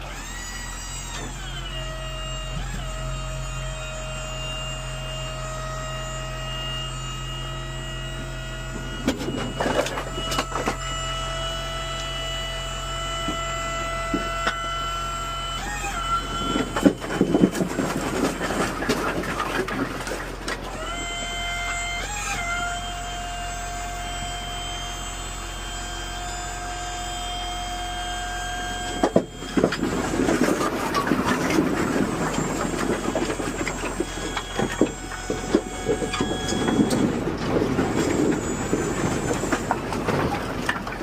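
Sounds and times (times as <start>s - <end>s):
hydraulic pump whining: 0.0s - 41.0s
truck engine running: 28.4s - 41.0s.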